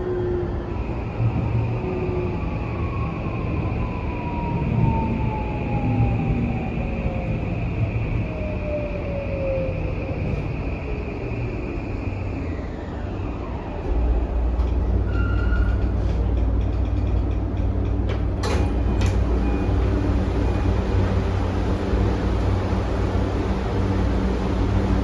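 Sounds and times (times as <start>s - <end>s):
wheels rumbling on track: 10.0s - 25.0s
train motor whine: 18.4s - 25.0s.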